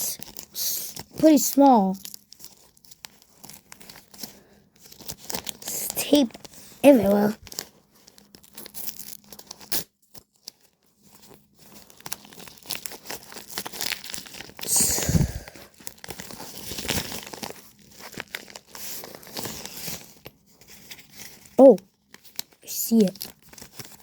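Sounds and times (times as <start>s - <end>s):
wrapping crinkling: 0.1s - 24.0s.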